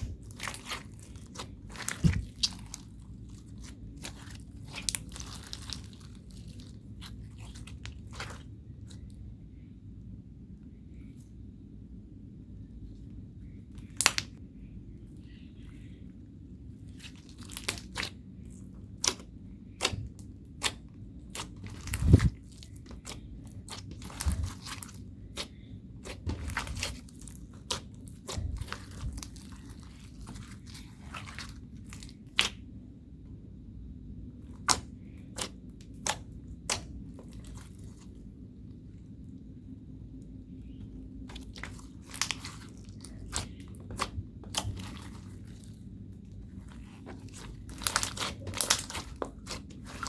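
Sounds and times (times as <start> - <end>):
slime popping and crackling: 0.0 - 9.0, 13.8 - 14.4, 17.0 - 18.2, 19.0 - 32.6, 34.6 - 38.1, 41.3 - 45.8, 46.4 - 50.0
low steady hum: 0.0 - 50.0.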